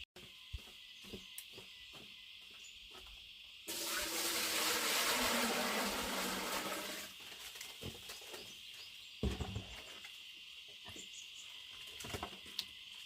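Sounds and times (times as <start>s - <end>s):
insects chirring: 0.2s - 3.7s, 4.8s - 13.0s
water rushing: 3.7s - 7.1s.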